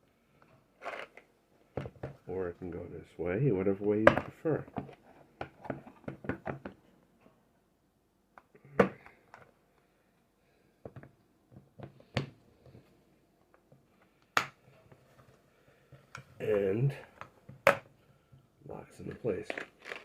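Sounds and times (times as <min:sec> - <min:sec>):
plastic taps and rattles: 0:04.0 - 0:06.8.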